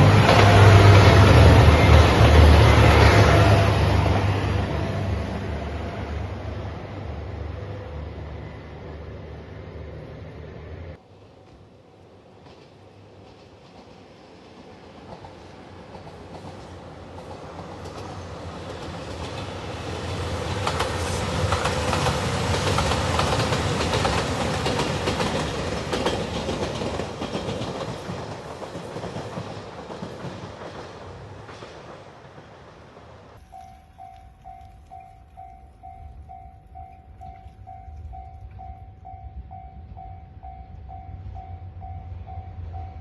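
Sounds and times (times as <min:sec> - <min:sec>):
train passing: 0:00.0 - 0:43.0
wheels clacking over rail joints: 0:12.3 - 0:38.7.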